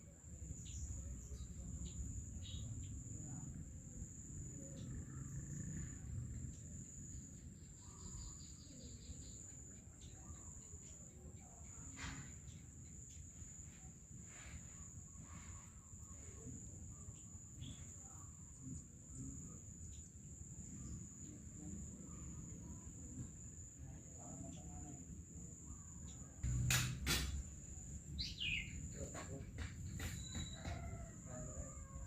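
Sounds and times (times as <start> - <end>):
knock: 26.4 - 27.4, 29.1 - 31.0
bird chirps: 28.1 - 31.1.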